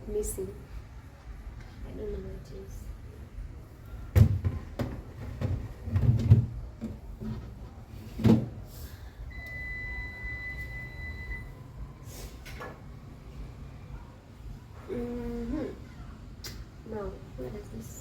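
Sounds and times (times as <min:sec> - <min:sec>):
plastic shelves knocking and clicking: 0:04.2 - 0:07.4, 0:08.2 - 0:08.6.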